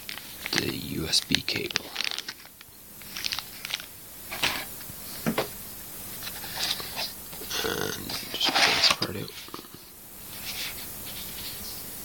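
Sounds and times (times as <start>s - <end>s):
plastic and cardboard crackling: 0.0s - 4.7s.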